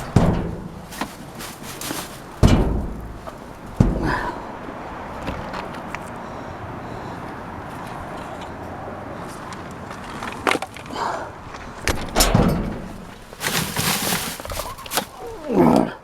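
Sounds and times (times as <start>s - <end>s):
dense scraping: 0.0s - 5.7s, 9.3s - 15.6s
irregular knocks and clattering: 0.0s - 6.2s, 9.4s - 15.4s.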